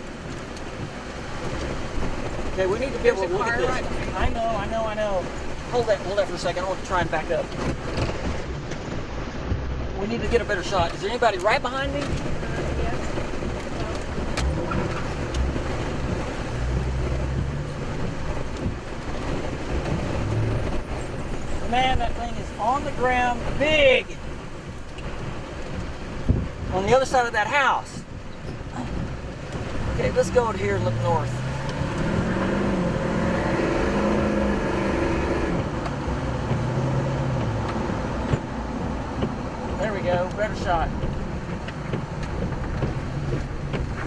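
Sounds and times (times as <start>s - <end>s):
vehicle engine running: 0.0s - 26.7s
wind over microphone: 0.0s - 27.1s, 27.9s - 44.0s
steady rushing noise: 0.0s - 44.0s.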